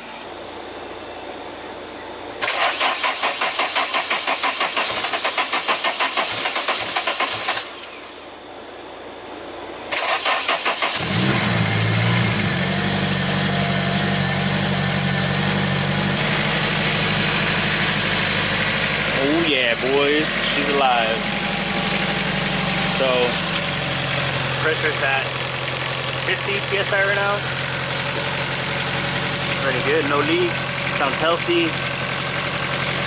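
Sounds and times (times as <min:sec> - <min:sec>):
starter motor cranking: 0:02.4 - 0:08.0
car engine idling: 0:10.9 - 0:33.0.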